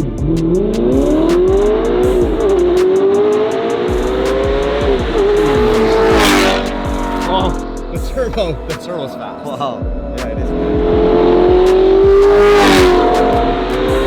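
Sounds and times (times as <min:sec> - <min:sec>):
race car engines at full throttle: 0:00.0 - 0:14.0
cars rushing past: 0:00.4 - 0:07.8, 0:10.5 - 0:14.0.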